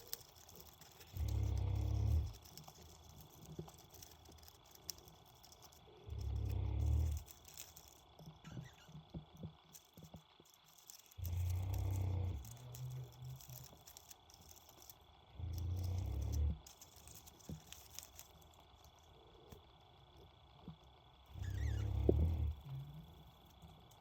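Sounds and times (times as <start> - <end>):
parakeet clicks and rattles: 0.0 - 19.6
dog snoring: 1.1 - 2.4, 6.1 - 7.1, 21.8 - 22.9.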